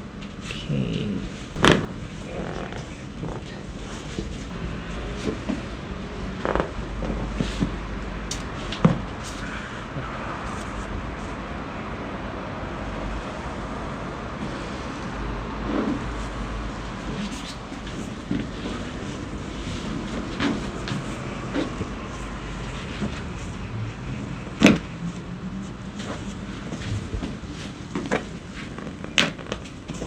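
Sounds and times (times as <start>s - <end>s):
spinal adjustment clicks: 1.6s - 1.9s.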